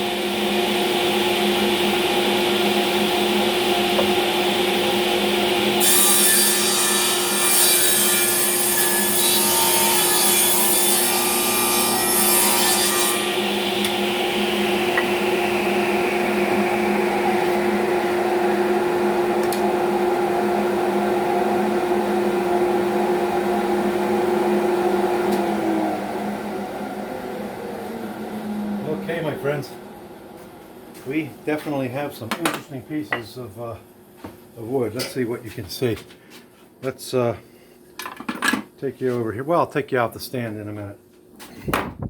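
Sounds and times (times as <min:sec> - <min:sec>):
bandsaw cutting wood: 0:00.0 - 0:19.6.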